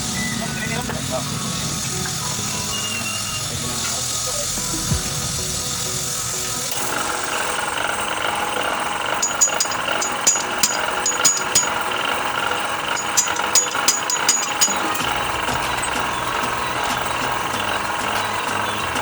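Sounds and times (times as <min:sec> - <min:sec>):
machine running: 0:00.0 - 0:19.0
metallic clicks and taps: 0:09.2 - 0:11.8, 0:12.9 - 0:15.2.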